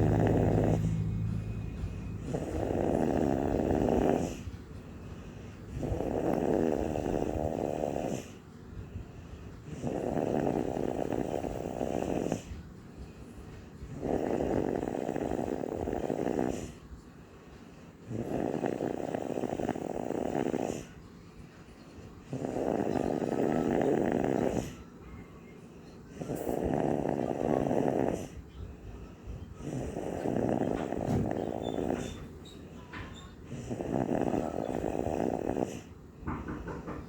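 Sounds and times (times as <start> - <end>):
person snoring: 0.0 - 1.3, 2.2 - 4.5, 5.7 - 8.4, 9.6 - 12.5, 13.9 - 16.8, 18.1 - 20.9, 22.3 - 24.8, 26.1 - 28.4, 29.6 - 32.2, 33.5 - 35.9
quiet breathing: 0.0 - 36.6.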